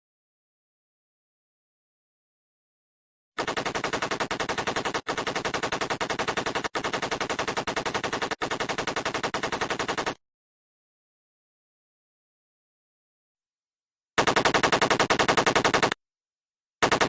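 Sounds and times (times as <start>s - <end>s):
automatic gunfire: 3.4s - 10.2s, 14.2s - 16.0s.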